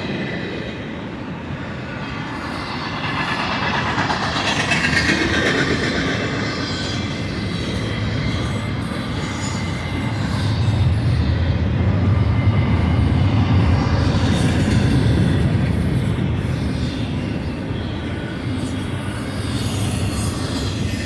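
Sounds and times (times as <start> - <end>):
train wheels rumbling on rails: 0.0 - 21.0.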